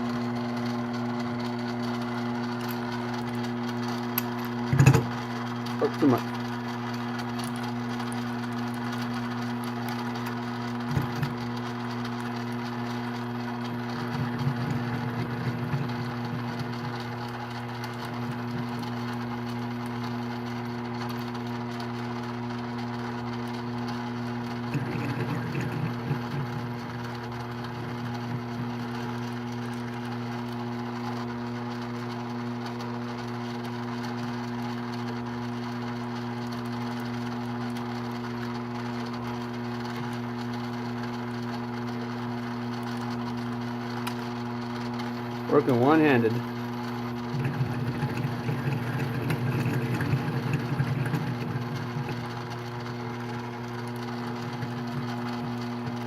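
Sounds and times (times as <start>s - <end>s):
lathe motor humming: 0.0s - 31.5s, 44.4s - 56.0s.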